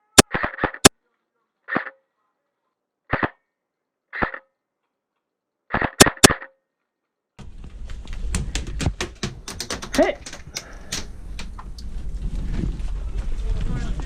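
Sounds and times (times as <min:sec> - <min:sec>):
airsoft rifle shots snapping: 0:03.1 - 0:03.4, 0:04.2 - 0:04.4, 0:05.7 - 0:06.5
rustling with clicks: 0:04.2 - 0:13.7.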